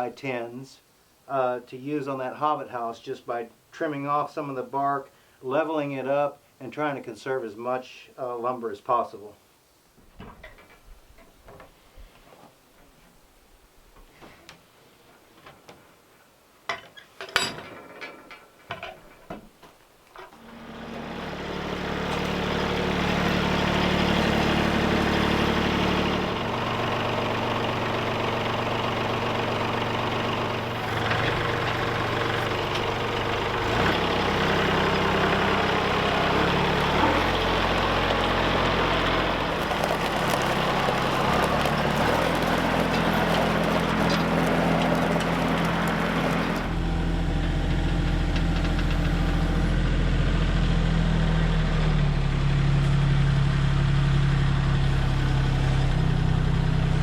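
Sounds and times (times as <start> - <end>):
engine running: 20.2 - 57.0.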